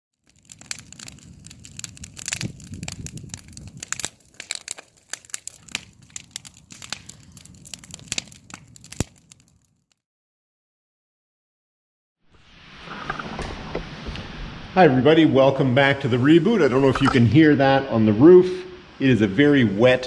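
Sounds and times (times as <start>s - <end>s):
rain hitting a roof: 0.2s - 9.4s.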